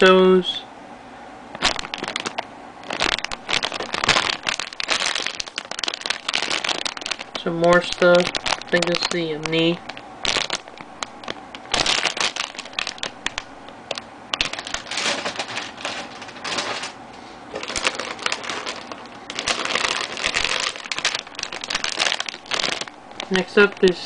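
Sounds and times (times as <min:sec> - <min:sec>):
plastic bags crinkling: 0:01.5 - 0:24.0
plastic parts clicking and clattering: 0:11.7 - 0:23.9.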